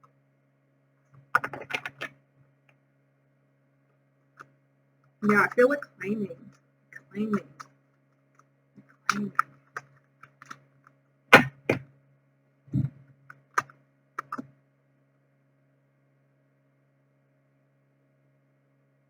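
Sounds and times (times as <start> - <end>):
faint electrical hum: 0.0 - 19.0
cards clicking and knocking: 1.3 - 2.1, 11.3 - 11.8, 13.6 - 14.4.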